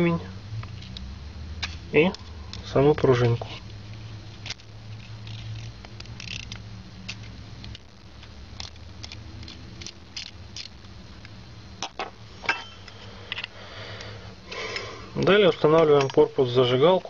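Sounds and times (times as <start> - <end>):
small metal parts clicking: 4.3 - 13.5.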